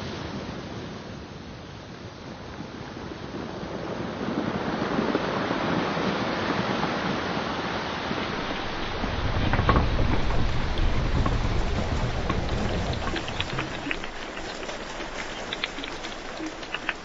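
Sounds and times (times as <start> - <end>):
rushing water splash: 7.8 - 17.0.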